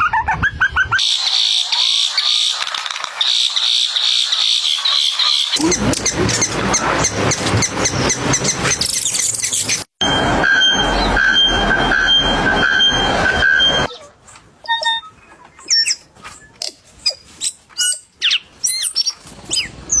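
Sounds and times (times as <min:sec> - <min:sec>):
high animal squeaks and chirps: 0:13.9 - 0:20.0.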